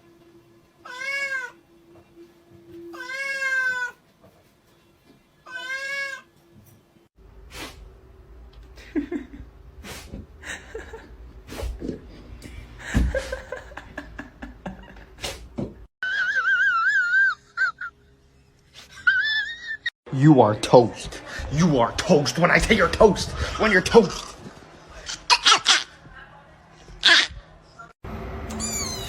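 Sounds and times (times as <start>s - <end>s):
cat meowing: 0.8s - 1.6s, 2.9s - 4.0s, 5.4s - 6.3s, 28.6s - 29.0s.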